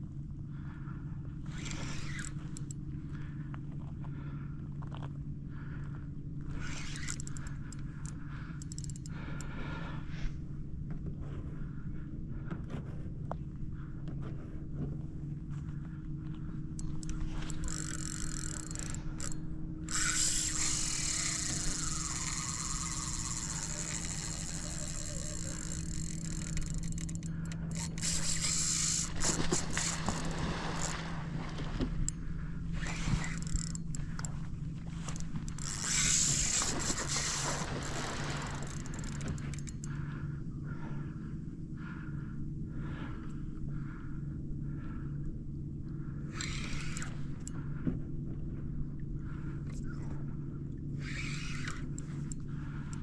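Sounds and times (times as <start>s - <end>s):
low hum: 0.0s - 53.0s
fishing reel and line hissing: 1.4s - 2.8s, 6.5s - 9.5s, 16.7s - 31.2s, 32.0s - 34.4s, 35.0s - 39.9s, 46.2s - 47.7s, 50.9s - 53.0s.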